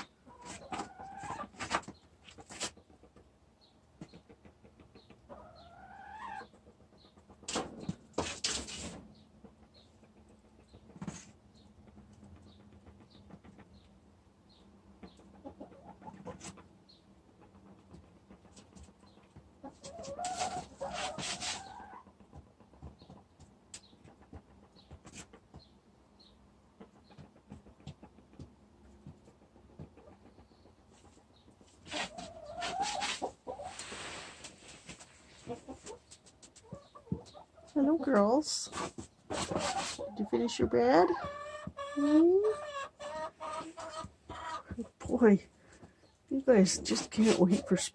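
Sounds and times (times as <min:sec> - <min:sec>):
hens chirping: 0:00.0 - 0:47.9
scratching in bedding: 0:31.8 - 0:35.4
loud scrapes: 0:32.8 - 0:35.2.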